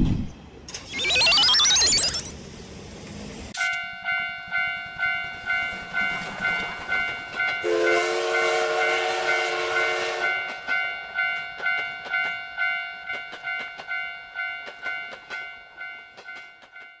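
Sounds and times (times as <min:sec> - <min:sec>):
railroad crossing bell ringing: 0:03.6 - 0:17.0
wheels clicking over rail joints: 0:04.8 - 0:07.7, 0:10.3 - 0:17.0
train horn: 0:07.6 - 0:10.6.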